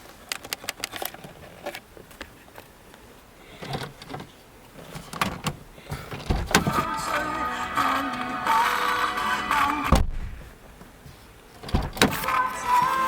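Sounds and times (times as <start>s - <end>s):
clicks and knocks inside car: 3.5s - 6.9s, 9.8s - 12.9s
heavy thump: 5.9s - 6.9s, 9.9s - 10.8s, 11.6s - 12.2s
music from car stereo: 5.9s - 10.6s, 11.7s - 13.0s.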